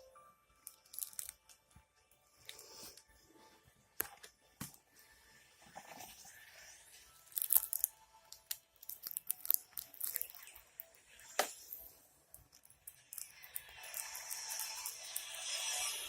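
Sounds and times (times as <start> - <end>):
handling clicks and crinkles: 0.6 - 1.6, 7.2 - 15.3.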